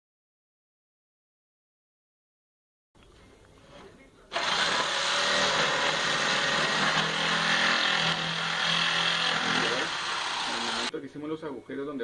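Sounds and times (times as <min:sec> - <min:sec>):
electric saw cutting wood: 0:04.3 - 0:10.9.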